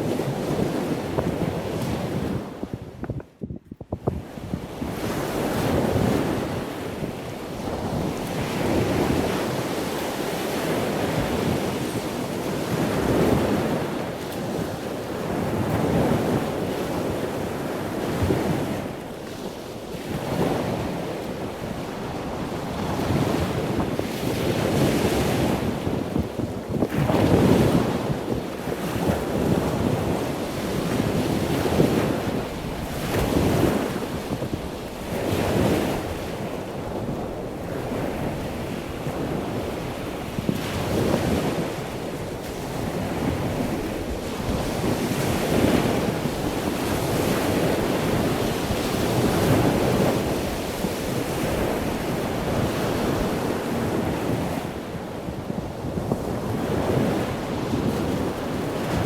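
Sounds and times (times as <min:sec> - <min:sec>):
ocean waves washing: 0:00.0 - 0:02.6, 0:04.2 - 0:59.0.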